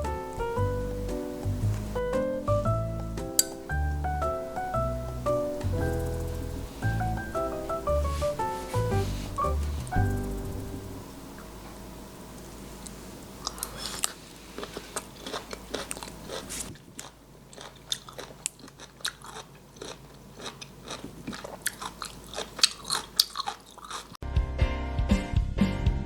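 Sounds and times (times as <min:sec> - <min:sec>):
background music: 0:00.0 - 0:11.1, 0:24.2 - 0:26.0
crunchy chewing: 0:13.4 - 0:24.2.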